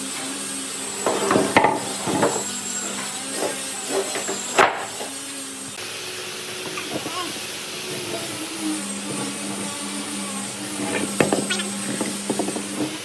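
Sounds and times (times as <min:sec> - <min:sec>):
steady machine hum: 0:05.5 - 0:13.0
wood knocking: 0:06.6 - 0:13.0.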